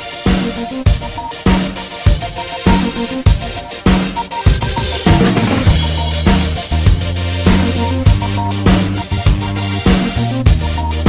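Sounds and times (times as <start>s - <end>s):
drum-kit beat: 0.0s - 11.0s
low sustained bass: 5.7s - 11.0s.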